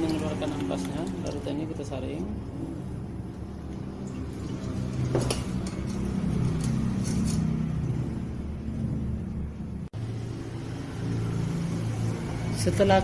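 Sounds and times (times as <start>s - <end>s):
pot and strainer clinking: 4.0s - 7.6s.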